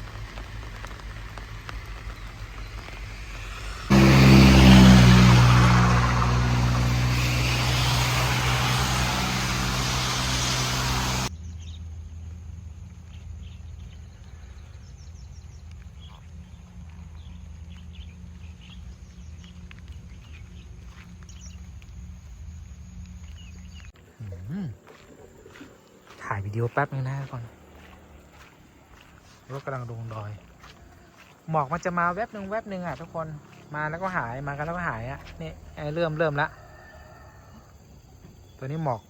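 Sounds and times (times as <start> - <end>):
motor vehicle running loud: 0.0 - 11.3, 27.2 - 37.2
low hum: 0.0 - 15.5.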